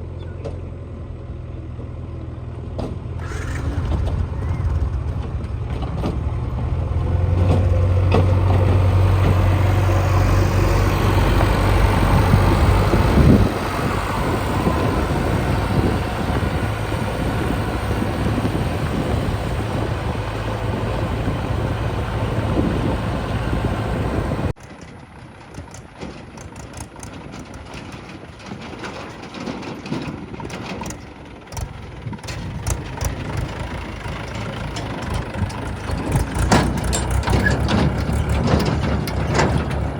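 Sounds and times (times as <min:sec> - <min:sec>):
diesel engine running: 0:00.0 - 0:29.3, 0:30.1 - 0:39.9
knocks and clunks: 0:02.8 - 0:14.7, 0:34.3 - 0:39.9.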